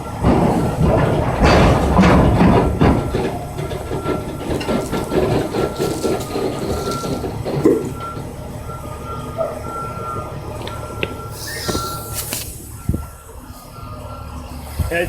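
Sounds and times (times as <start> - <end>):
truck engine rumbling: 0.0 - 15.0
faint high beep: 10.7 - 13.0.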